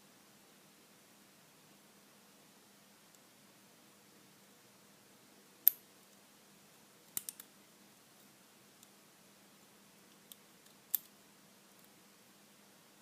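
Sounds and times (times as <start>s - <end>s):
lock pick clicking: 7.2s - 7.4s.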